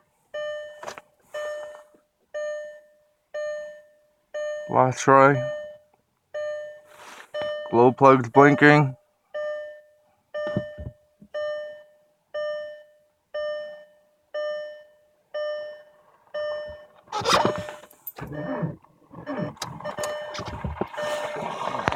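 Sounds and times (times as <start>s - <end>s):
car dashboard warning chime: 0.4s - 21.5s
starter cranking diesel engine: 17.2s - 21.9s.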